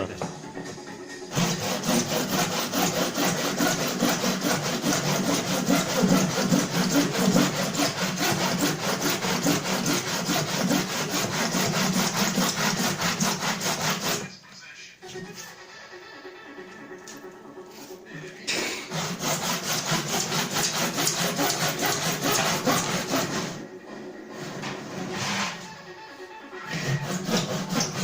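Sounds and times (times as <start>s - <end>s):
saw cutting: 1.3s - 14.4s, 18.8s - 23.6s, 26.7s - 28.0s.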